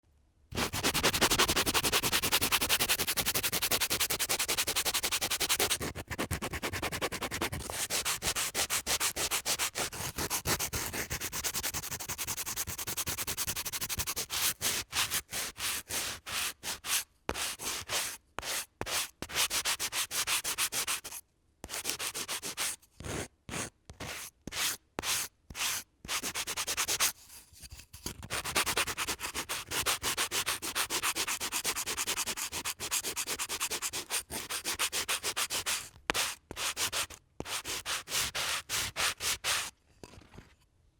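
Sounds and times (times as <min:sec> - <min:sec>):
sandpaper rubbing on wood: 0:00.6 - 0:14.6, 0:28.4 - 0:39.7.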